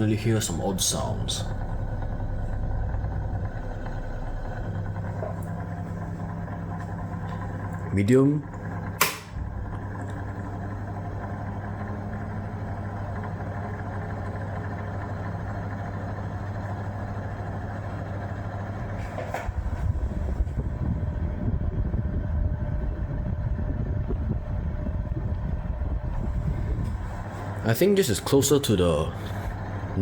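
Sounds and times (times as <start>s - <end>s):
fan air rush: 0.0s - 30.0s
table fan motor hum: 0.0s - 30.0s
fan switch click: 8.9s - 9.4s.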